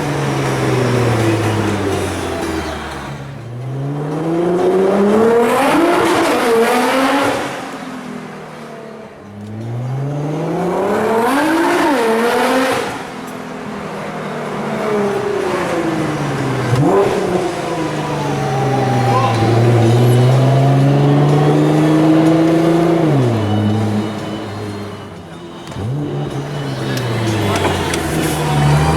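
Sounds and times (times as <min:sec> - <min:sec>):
car engine revving through gears: 0:00.0 - 0:28.9
engine rev blip: 0:14.5 - 0:28.9.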